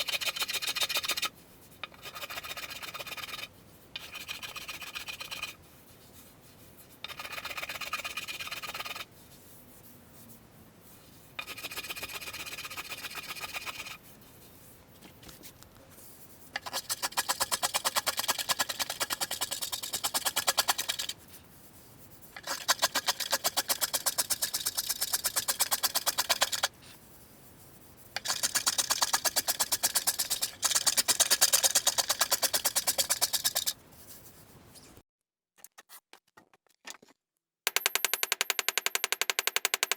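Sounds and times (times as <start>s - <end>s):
hand tool scraping wood: 7.1s - 9.0s, 16.6s - 21.2s, 22.4s - 26.7s, 28.2s - 33.8s
fast rattling clicks: 28.2s - 33.7s.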